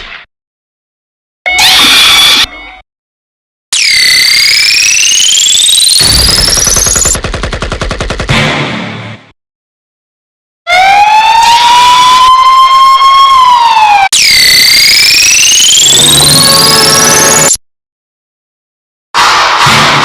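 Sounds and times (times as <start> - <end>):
siren-like synthetic tone: 1.5 - 2.8, 3.8 - 7.2, 10.7 - 17.6
rapid buzzing stutter: 3.8 - 7.2.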